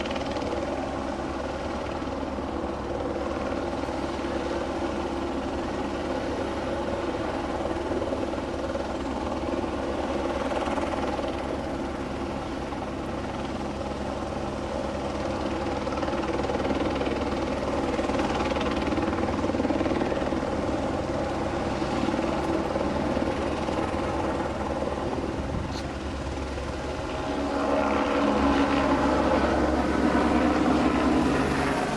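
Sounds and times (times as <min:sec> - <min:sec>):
helicopter engine hum: 0:00.0 - 0:31.9
helicopter rotor beating: 0:00.0 - 0:31.9.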